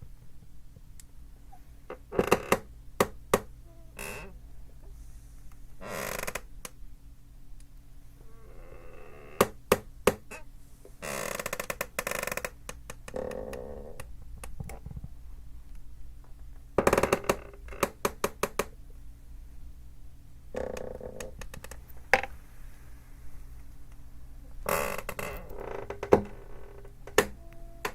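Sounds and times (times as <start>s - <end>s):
chair creaking: 20.6s - 22.4s, 24.6s - 27.9s.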